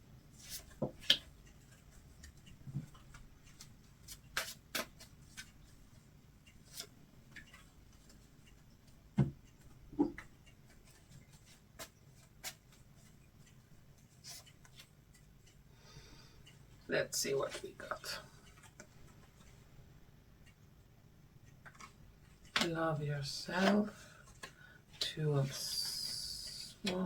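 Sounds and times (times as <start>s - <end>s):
cards shuffled and flicked: 2.8s - 5.5s, 21.6s - 22.7s.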